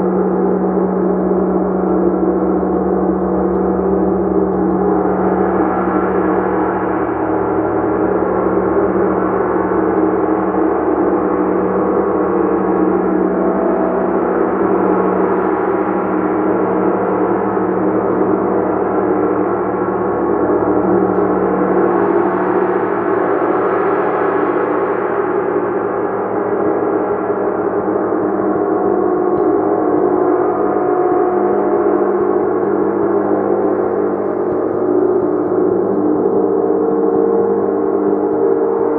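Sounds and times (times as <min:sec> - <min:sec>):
gong sustained tones: 0:00.0 - 0:38.9.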